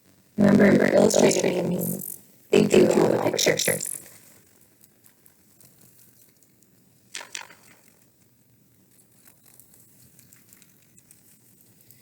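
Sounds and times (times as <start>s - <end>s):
page turning swish: 7.2s - 7.9s.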